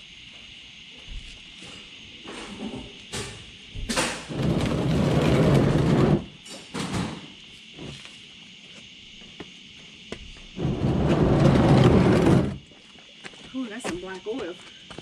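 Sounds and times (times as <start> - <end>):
loud rough handling noise: 10.6 - 12.6.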